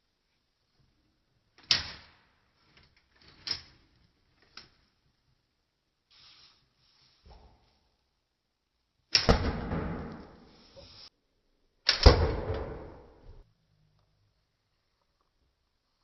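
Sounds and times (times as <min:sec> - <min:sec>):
rubber band gun firing: 0:11.9 - 0:13.1.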